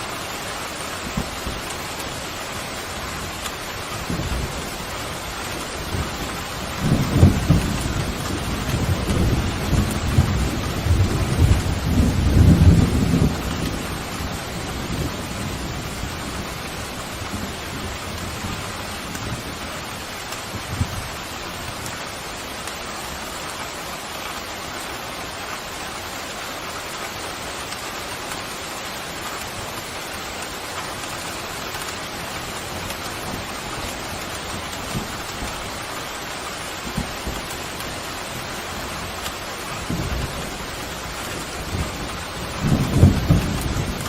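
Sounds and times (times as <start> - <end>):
heavy rain falling: 0.0 - 44.0
distant thunder rumbles: 3.9 - 21.2, 36.8 - 44.0.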